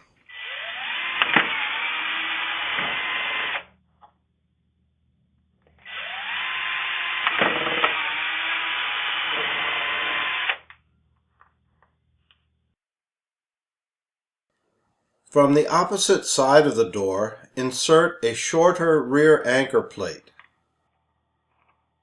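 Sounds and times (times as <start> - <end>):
power drill drilling through door: 0.2 - 3.7, 5.7 - 10.7.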